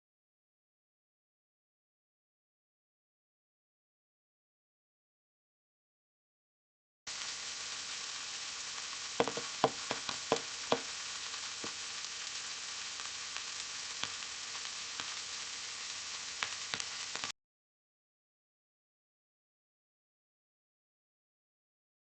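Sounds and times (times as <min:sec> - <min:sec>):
butter sizzling in a pan: 0:07.1 - 0:17.3
sharp crackling pops: 0:07.1 - 0:17.3.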